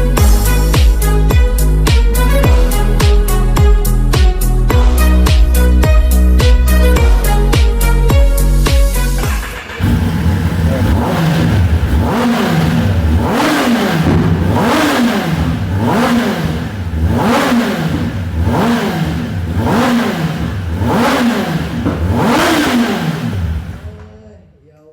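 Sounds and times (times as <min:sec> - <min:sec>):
motorcycle engine revving: 0:09.0 - 0:24.2.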